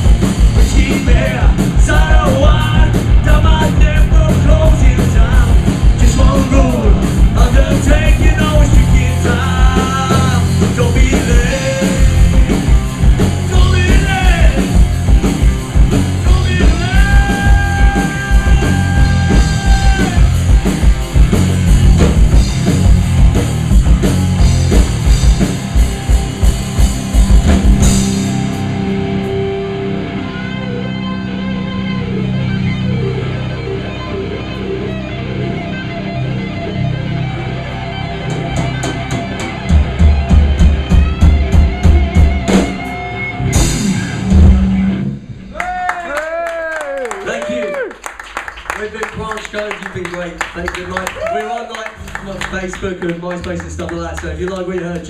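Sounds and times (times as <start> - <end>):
rock band playing: 0.0 - 55.0
person singing: 0.6 - 12.6, 13.4 - 14.8, 16.2 - 20.4
guitar chord ringing: 28.1 - 39.8.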